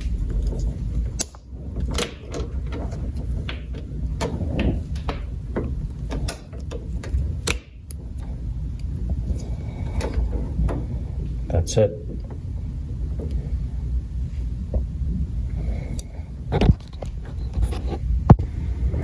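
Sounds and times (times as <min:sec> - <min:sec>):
hose fittings clicking and knocking: 0:00.0 - 0:13.9
low handling rumble: 0:00.0 - 0:19.0.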